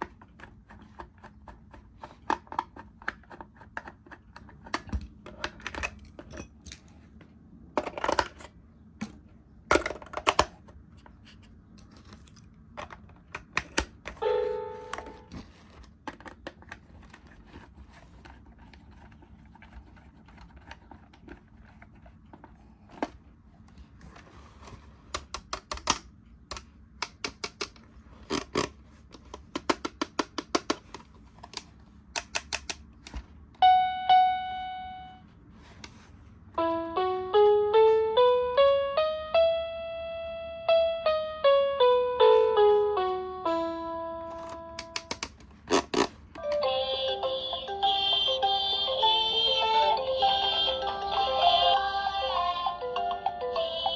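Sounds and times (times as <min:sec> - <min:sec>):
electronic toy tones: 0:33.6 - 0:35.2.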